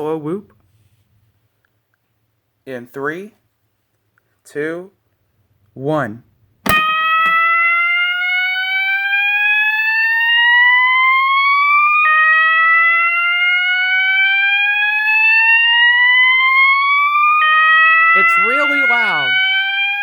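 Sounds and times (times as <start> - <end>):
fire alarm whoop tone: 6.7 - 20.0.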